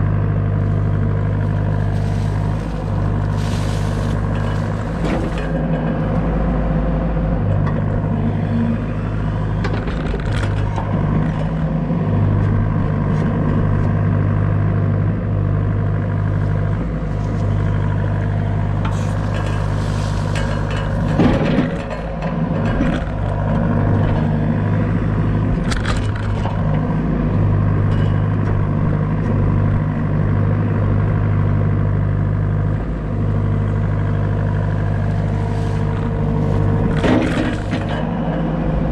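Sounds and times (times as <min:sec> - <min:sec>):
excavator diesel engine running: 0:00.0 - 0:38.9
metal knocks and clanks: 0:18.8 - 0:24.4.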